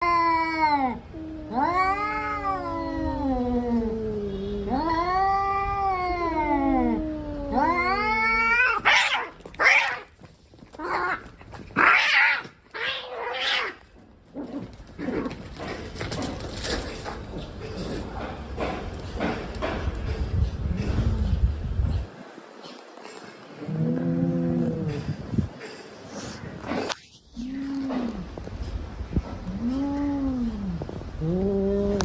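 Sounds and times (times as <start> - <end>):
cat yowling: 0.0 - 10.1.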